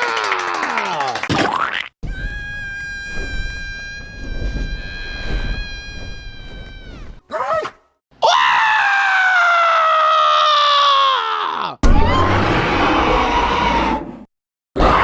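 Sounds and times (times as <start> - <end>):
harsh scream: 0.0 - 1.3, 8.2 - 14.0
loud descending scream: 8.2 - 14.0.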